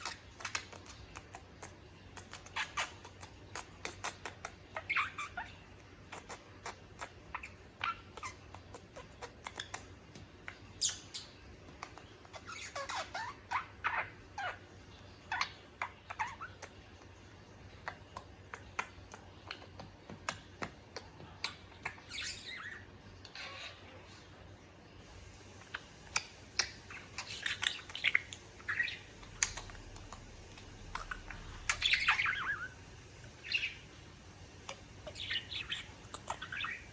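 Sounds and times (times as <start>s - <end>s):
budgerigar chirping: 25.4s - 34.0s, 34.6s - 36.9s.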